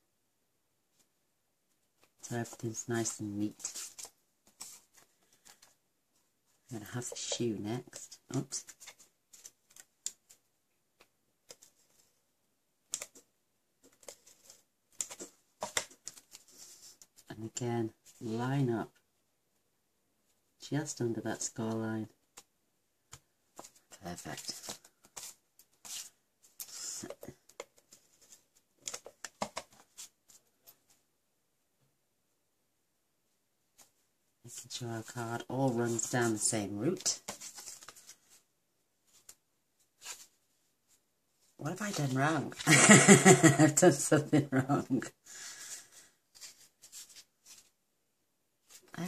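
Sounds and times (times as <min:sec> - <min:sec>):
paper taps and clicks: 0:14.9 - 0:16.3, 0:28.8 - 0:29.8.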